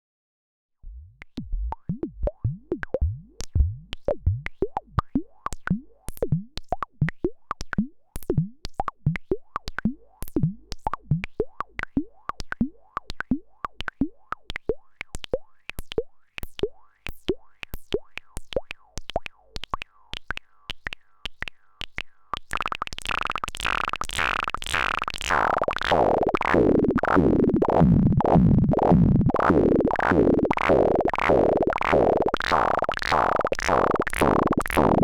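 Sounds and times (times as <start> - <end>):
low bass drone: 0.8 - 5.0.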